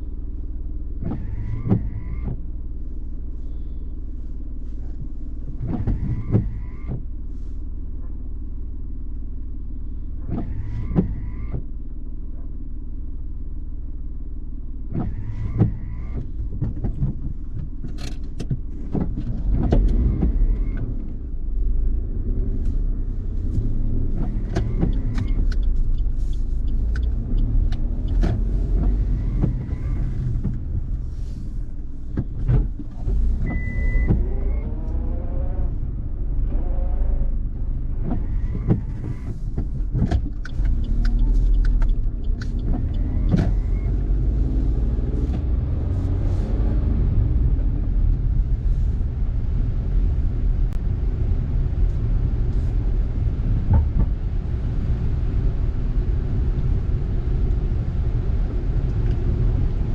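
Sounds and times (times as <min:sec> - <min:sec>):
tyre and engine rumble: 0:00.0 - 0:59.9
sharp clicks: 0:40.0 - 0:43.8.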